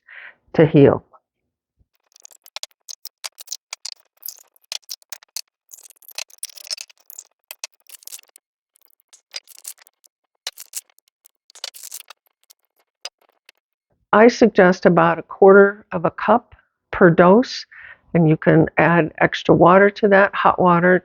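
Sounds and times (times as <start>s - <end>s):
clicks taps and scrapes: 1.9s - 13.8s.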